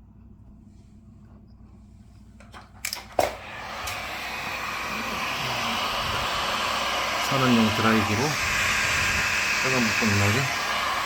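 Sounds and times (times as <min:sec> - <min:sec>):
heat gun switch click: 0:02.8 - 0:04.0
heat gun blowing hiss: 0:03.0 - 0:11.0.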